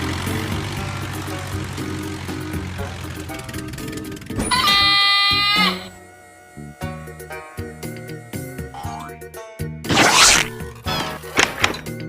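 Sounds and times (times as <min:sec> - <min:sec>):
cartoon soundtrack music: 0:00.2 - 0:06.0, 0:06.6 - 0:12.0.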